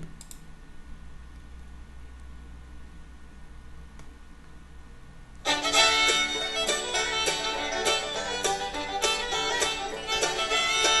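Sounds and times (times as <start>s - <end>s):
upbeat plucked string music: 5.4s - 11.0s.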